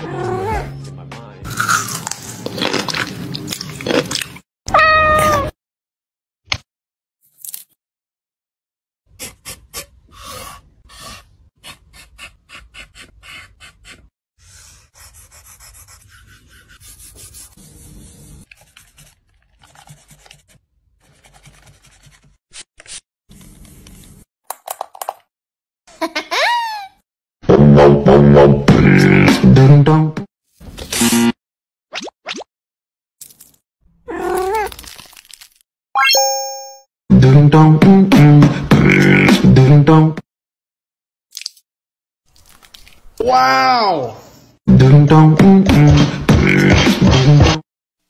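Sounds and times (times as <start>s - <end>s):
cat meowing: 4.7s - 5.5s, 34.1s - 34.7s.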